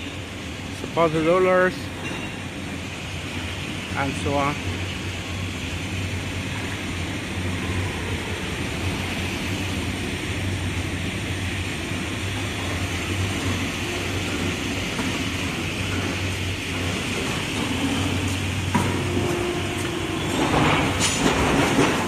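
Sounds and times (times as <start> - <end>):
machinery low hum: 3.2 - 22.0.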